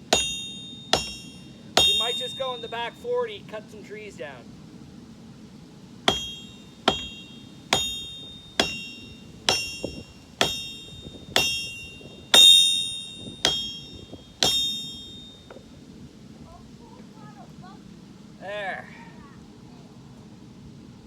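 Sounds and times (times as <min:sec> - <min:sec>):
hammer ringing on sword blade: 0:00.0 - 0:03.0, 0:06.1 - 0:15.6.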